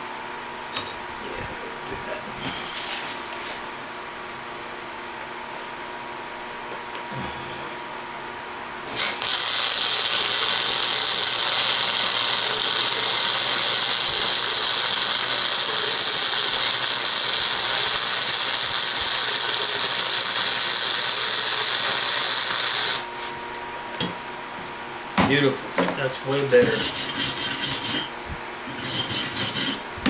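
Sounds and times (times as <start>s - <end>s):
electric welding arc: 8.9s - 23.1s.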